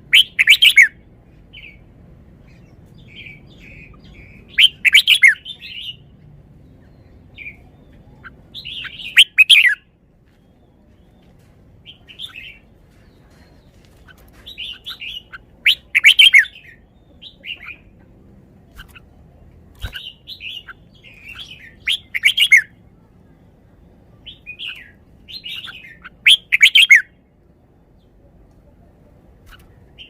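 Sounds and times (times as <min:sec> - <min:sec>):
bulbul singing: 0:00.0 - 0:01.8, 0:02.5 - 0:06.1, 0:06.8 - 0:09.9, 0:14.5 - 0:17.9, 0:19.7 - 0:22.8, 0:24.1 - 0:27.2.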